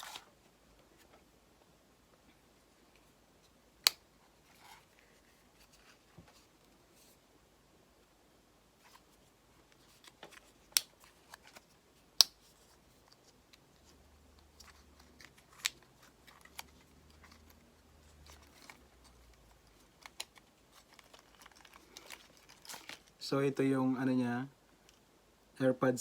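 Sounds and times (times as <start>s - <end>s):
plastic packaging clicks: 18.3s - 23.2s.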